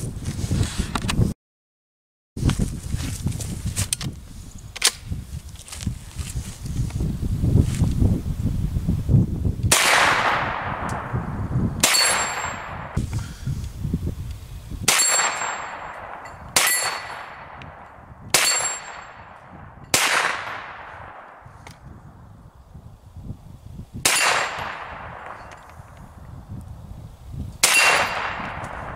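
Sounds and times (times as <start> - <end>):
gunshots with ringing tail: 9.7 - 13.0, 14.8 - 21.5, 24.0 - 25.5, 27.6 - 28.9.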